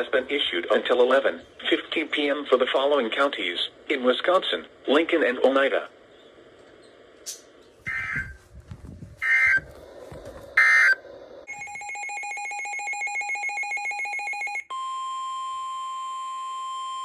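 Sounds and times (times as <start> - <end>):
steady warning alarm tone: 7.8 - 8.4, 9.2 - 9.7, 10.6 - 15.2
pulsing electronic alert tone: 7.9 - 8.4, 9.2 - 9.6.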